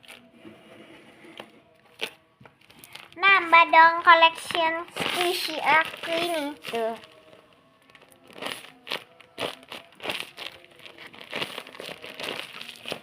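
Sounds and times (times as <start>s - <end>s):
paper crinkling: 1.9s - 13.0s.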